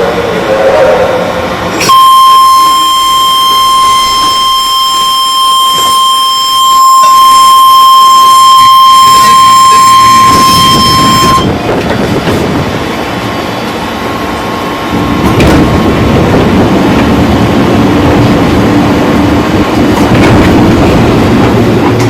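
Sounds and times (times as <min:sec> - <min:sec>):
train running noise: 0:00.0 - 0:22.0
high-pitched warning tone: 0:01.8 - 0:11.6.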